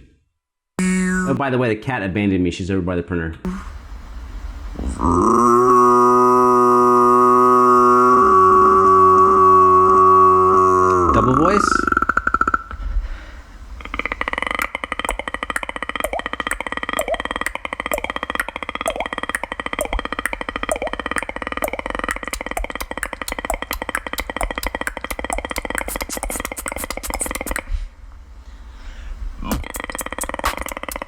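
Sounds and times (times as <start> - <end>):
droning vocal tone: 0.8 - 1.4, 3.5 - 3.8, 4.8 - 12.6, 13.8 - 27.6
sharp mouth clicks: 13.8 - 27.7, 29.4 - 31.0.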